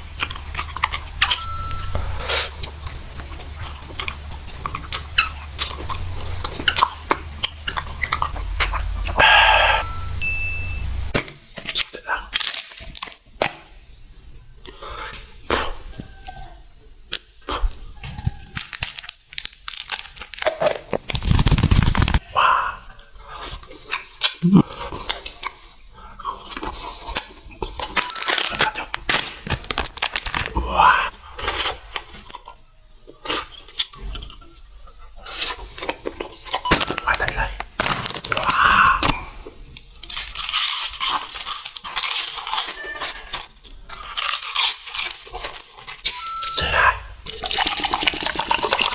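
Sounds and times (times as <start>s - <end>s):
food packaging crinkling: 11.1s - 13.3s, 17.1s - 22.3s, 23.5s - 46.6s, 47.2s - 48.9s
crunching: 11.1s - 13.6s, 17.1s - 22.3s, 26.3s - 32.5s, 35.2s - 48.9s.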